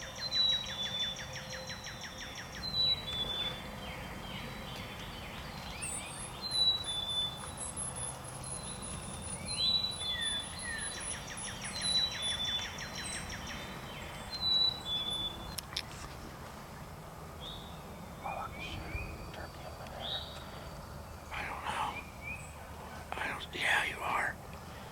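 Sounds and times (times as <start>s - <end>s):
bird trill: 5.6s - 15.6s.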